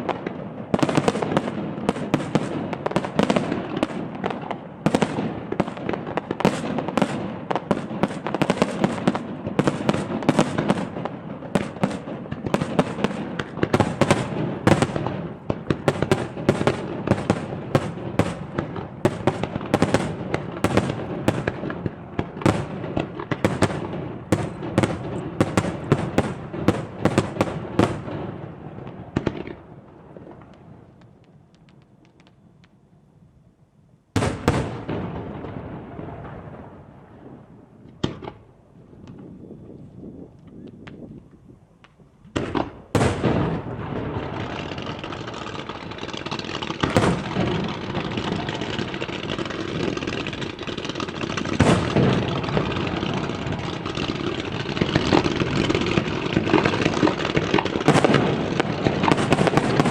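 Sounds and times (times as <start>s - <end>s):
fireworks bursts and crackling: 0.0s - 32.8s, 34.1s - 41.1s, 41.8s - 59.9s
rolling rumble: 43.4s - 59.9s.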